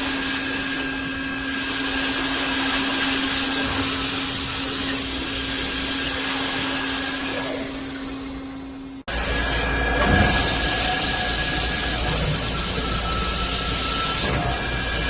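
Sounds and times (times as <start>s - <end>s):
drilling machine hum: 0.0s - 15.0s
loud hiss: 9.1s - 15.0s.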